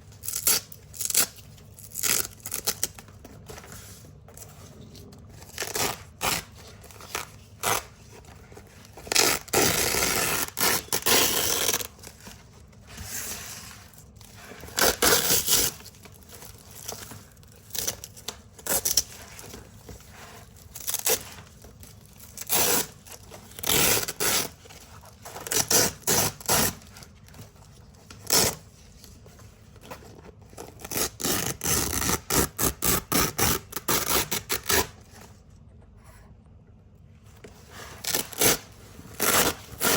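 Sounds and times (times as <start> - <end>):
velcro strips ripping: 22.3 - 23.0.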